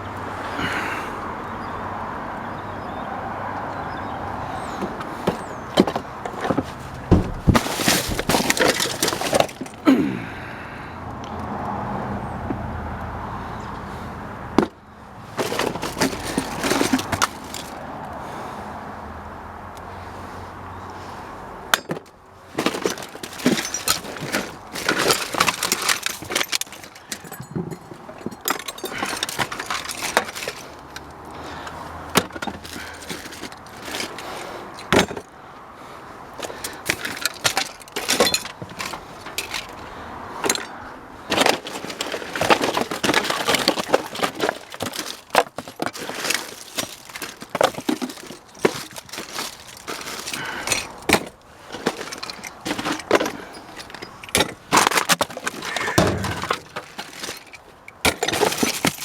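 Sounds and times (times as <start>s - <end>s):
junk clattering in a dumpster: 4.7s - 10.2s, 14.5s - 17.8s, 21.7s - 31.0s, 32.1s - 35.3s, 36.4s - 59.0s.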